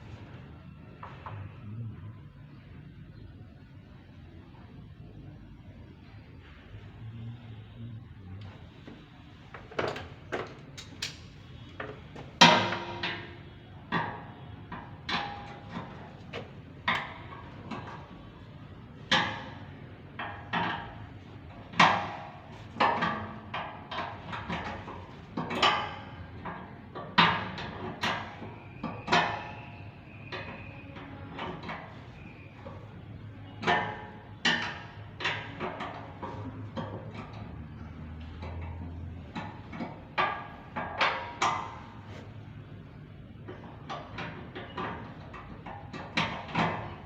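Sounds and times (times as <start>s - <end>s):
metal clanks and knocks: 9.5s - 18.2s, 19.0s - 42.4s.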